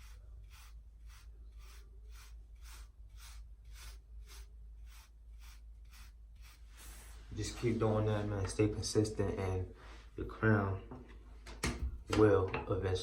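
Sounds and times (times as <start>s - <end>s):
hair brush strokes on hair: 0.0s - 8.2s.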